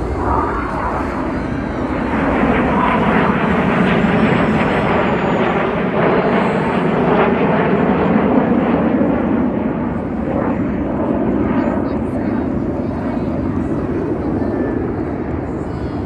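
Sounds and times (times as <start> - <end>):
jet roar: 0.0 - 16.0.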